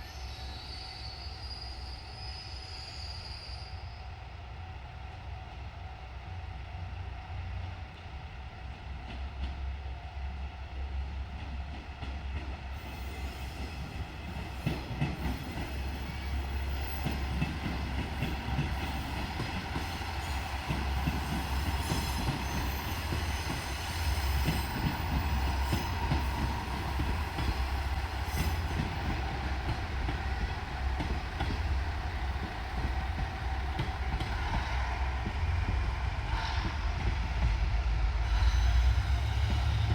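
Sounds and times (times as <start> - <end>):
diesel train engine rumbling: 0.0 - 39.9.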